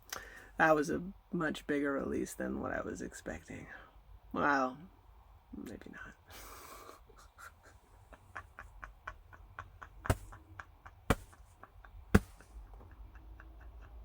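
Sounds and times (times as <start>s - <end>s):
wheezing laughter: 6.4s - 14.0s.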